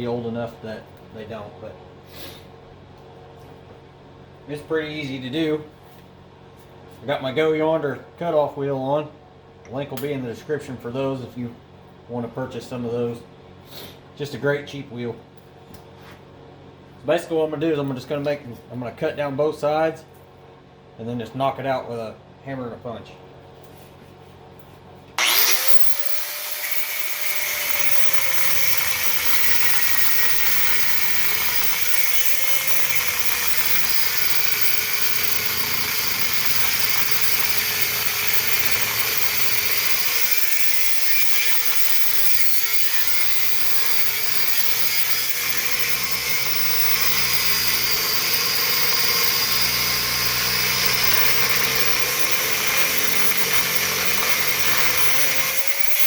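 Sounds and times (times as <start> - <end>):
cutoff wheel cutting metal: 25.2 - 56.0.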